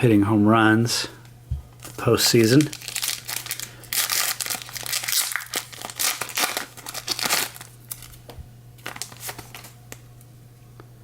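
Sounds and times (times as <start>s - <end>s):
low steady hum: 0.0s - 11.0s
foil wrapper crinkling and tearing: 1.8s - 10.0s.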